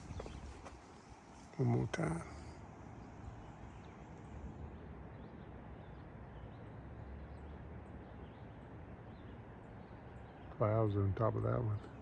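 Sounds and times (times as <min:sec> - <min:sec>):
faint birds chirping: 0:00.0 - 0:12.0.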